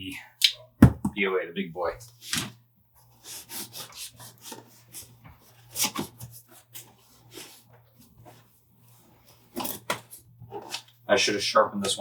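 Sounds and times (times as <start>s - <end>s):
knife sawing through cardboard: 3.2s - 7.6s.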